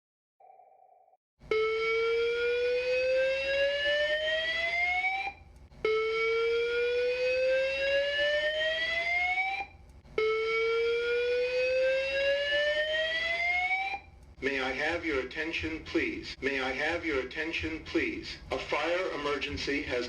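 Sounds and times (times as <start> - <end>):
fire alarm rising whoop tone: 1.4 - 14.1.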